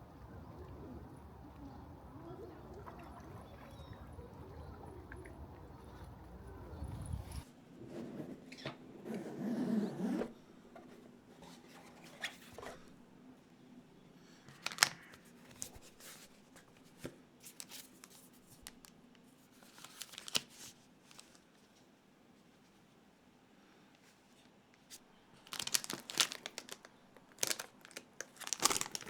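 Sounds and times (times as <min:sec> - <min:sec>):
packaging rustling: 0:14.5 - 0:16.0, 0:19.7 - 0:21.4, 0:25.4 - 0:29.0.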